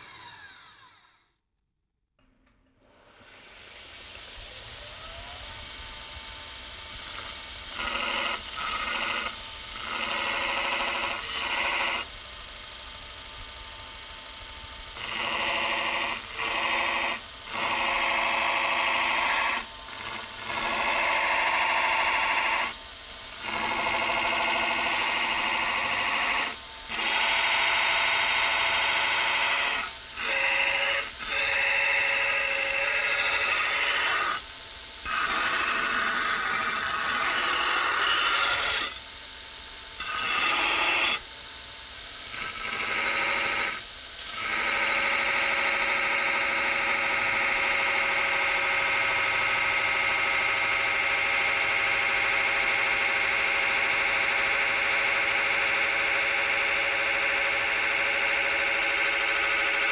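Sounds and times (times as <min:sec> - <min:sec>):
belt grinder grinding workpiece: 0:00.0 - 0:01.4, 0:06.9 - 0:12.1, 0:14.9 - 0:39.1, 0:40.0 - 0:41.3, 0:42.1 - 0:59.9
grinder motor running: 0:00.0 - 0:01.4, 0:03.2 - 0:12.2, 0:14.9 - 0:59.9.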